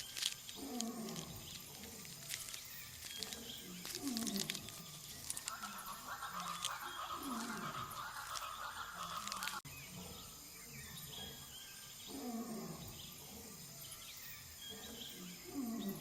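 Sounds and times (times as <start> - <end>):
low animal calls falling in pitch: 3.2 - 9.6.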